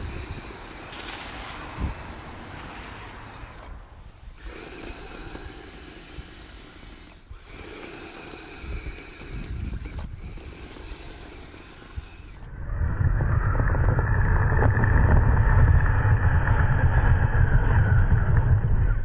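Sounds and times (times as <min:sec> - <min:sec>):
toy vehicle drivetrain whine: 0:00.0 - 0:19.0
low rumble: 0:12.2 - 0:19.0.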